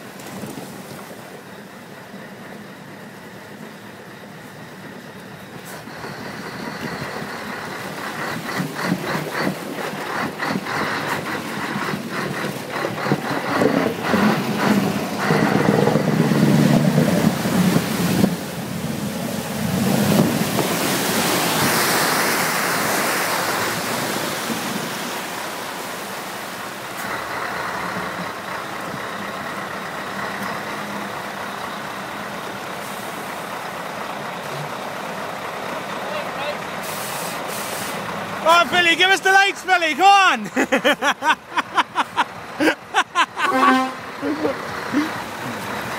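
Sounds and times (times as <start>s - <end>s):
truck engine revving: 1.9s - 45.9s
broad rushing hiss: 36.8s - 38.2s.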